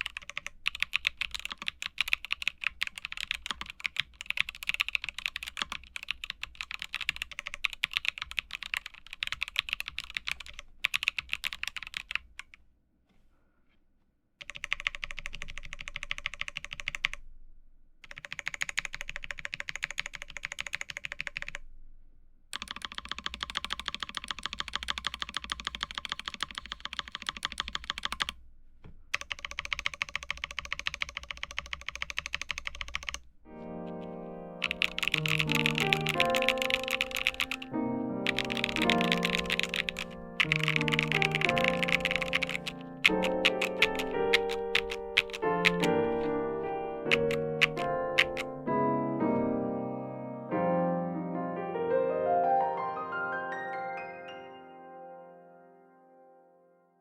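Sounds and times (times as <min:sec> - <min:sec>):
fast typing on mechanical keyboard: 0:00.0 - 0:12.6, 0:14.4 - 0:17.2, 0:18.0 - 0:21.6, 0:22.5 - 0:28.4, 0:29.1 - 0:33.3, 0:34.6 - 0:46.4, 0:47.0 - 0:48.5
music: 0:33.5 - 0:57.0.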